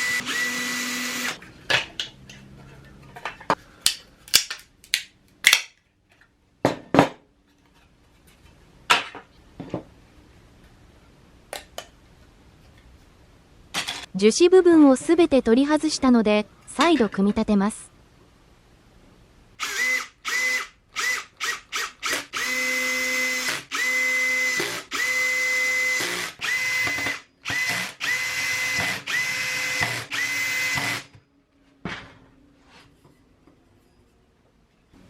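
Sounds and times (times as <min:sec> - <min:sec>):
cordless drill motor whine: 0:00.0 - 0:01.4, 0:19.6 - 0:31.1.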